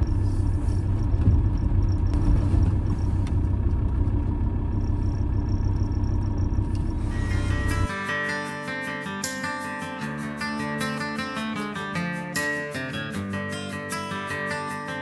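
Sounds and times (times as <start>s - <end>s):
vehicle engine and road rumble: 0.0s - 7.9s
guitar music: 6.7s - 15.0s.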